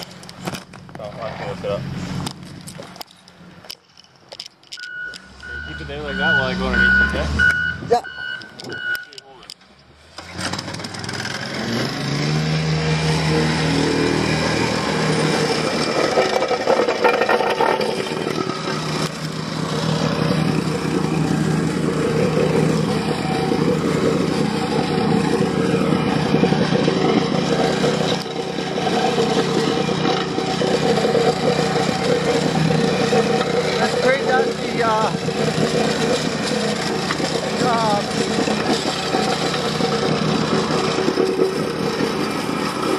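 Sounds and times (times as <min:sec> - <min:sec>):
loud engine running: 0:10.1 - 0:42.9.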